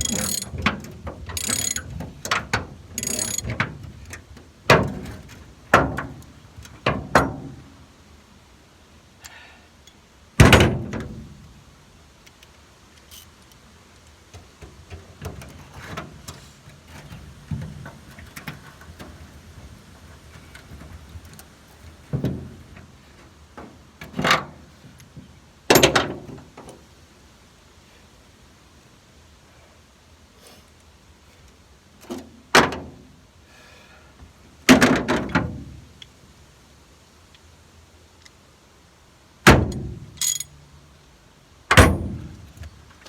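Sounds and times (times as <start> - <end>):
light clattering: 0.0 - 2.0, 3.0 - 3.7.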